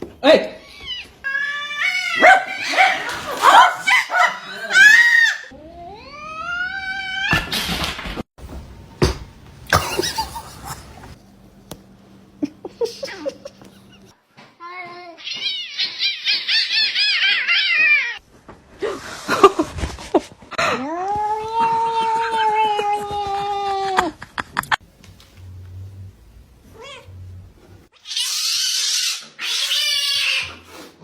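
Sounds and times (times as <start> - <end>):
cat meowing and yowling: 0.8 - 2.9, 4.7 - 7.5.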